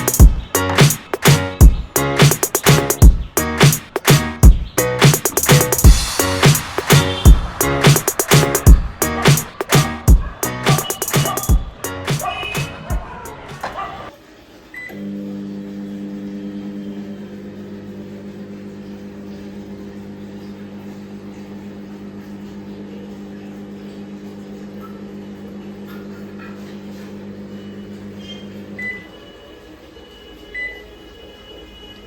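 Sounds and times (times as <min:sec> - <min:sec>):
microwave oven humming: 0:14.8 - 0:30.8
short beeps: 0:28.3 - 0:29.1.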